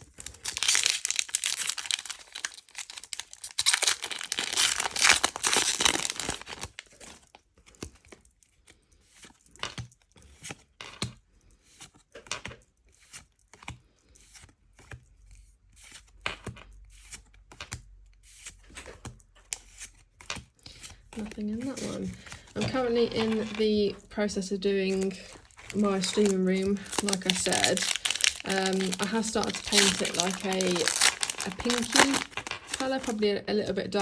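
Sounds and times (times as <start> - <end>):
cards being handled and flipped: 0.0 - 8.3, 9.0 - 33.2
foil wrapper tearing and crinkling: 0.0 - 8.3, 24.9 - 33.2.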